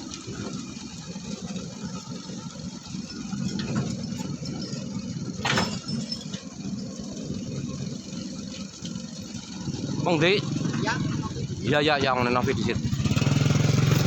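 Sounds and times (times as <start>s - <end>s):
heavy diesel machinery running: 0.0s - 14.0s
sharp clatter: 3.4s - 7.0s.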